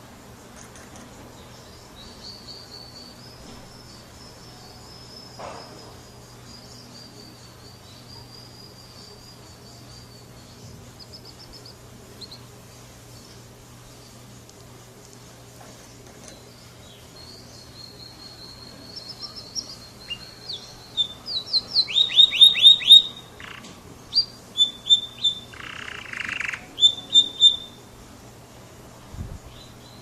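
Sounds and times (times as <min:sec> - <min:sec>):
steady low hum: 0:00.0 - 0:30.0
bird chirps: 0:09.8 - 0:12.5, 0:16.3 - 0:27.8
canary trilling: 0:17.2 - 0:27.8.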